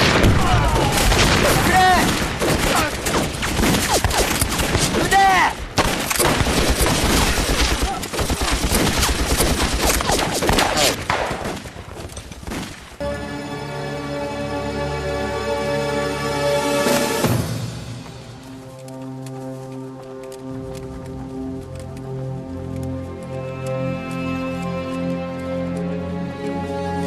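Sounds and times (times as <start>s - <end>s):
rifle and machine-gun fire: 0.0s - 11.7s
dramatic music: 13.0s - 27.0s.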